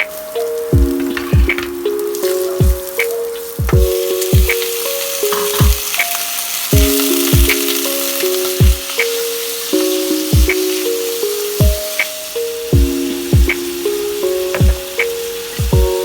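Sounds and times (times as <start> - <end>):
food sizzling in a pan: 0.0 - 16.0
lo-fi music with kick drum: 0.0 - 16.0.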